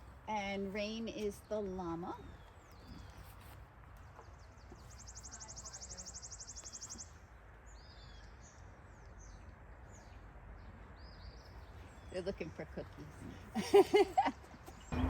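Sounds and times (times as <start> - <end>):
low outdoor rumble: 7.1 - 15.0.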